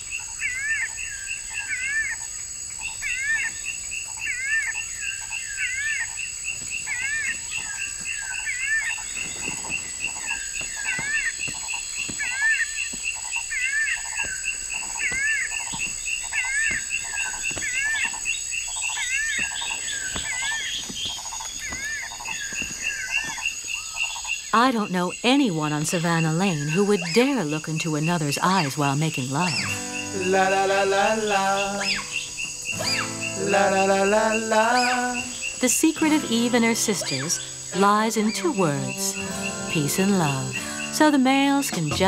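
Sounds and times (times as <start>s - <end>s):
animal warbling call: 29.4s - 41.0s.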